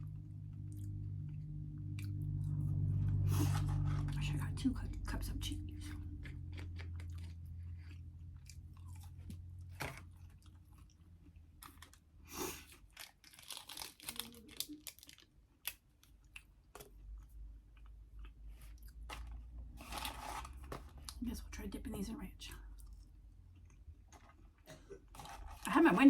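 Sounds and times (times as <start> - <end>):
chewing and crunching food: 0.0 - 21.4, 22.5 - 26.0.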